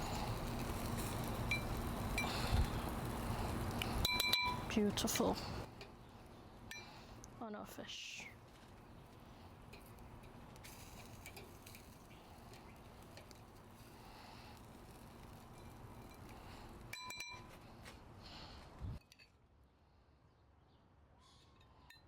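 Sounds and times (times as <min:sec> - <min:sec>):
light clinks: 0:03.8 - 0:04.7, 0:15.2 - 0:17.9.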